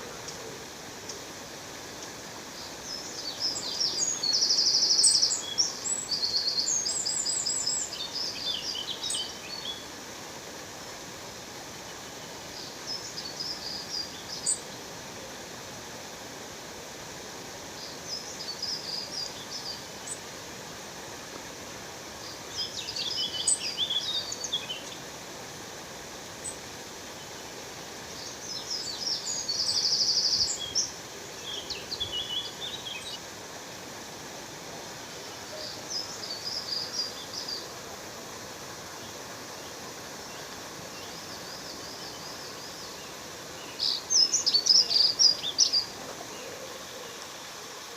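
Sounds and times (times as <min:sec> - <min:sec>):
waterfall rushing: 0:00.0 - 0:47.9
songbirds chirping and trilling: 0:22.1 - 0:25.2, 0:27.2 - 0:33.4, 0:35.2 - 0:47.9.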